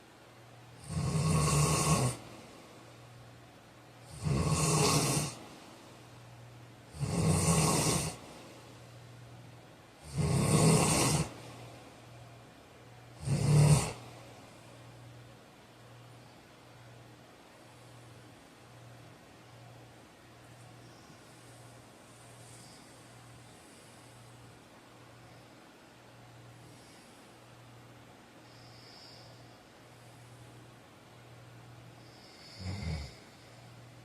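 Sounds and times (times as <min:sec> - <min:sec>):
man snoring: 0:00.8 - 0:02.2, 0:04.0 - 0:05.4, 0:06.9 - 0:08.3, 0:10.0 - 0:11.4, 0:13.2 - 0:14.2, 0:32.1 - 0:33.5.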